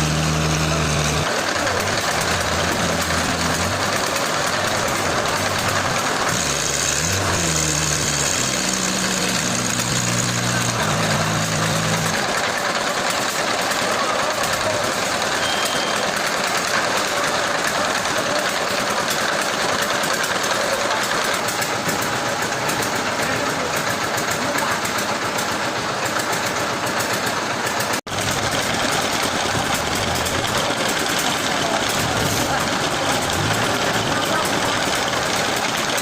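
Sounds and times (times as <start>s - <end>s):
engine running steadily: 0.0s - 36.0s.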